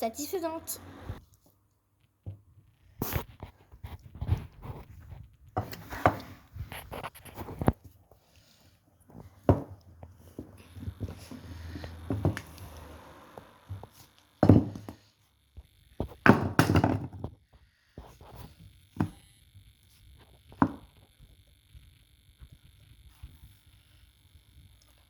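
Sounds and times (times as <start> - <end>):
tools thunking on clay: 9.1 - 9.8, 14.4 - 15.0, 16.2 - 17.3.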